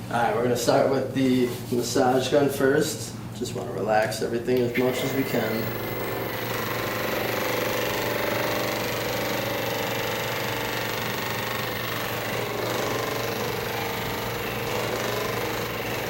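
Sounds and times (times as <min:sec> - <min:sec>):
massage gun hammering buzz: 0:04.6 - 0:16.0.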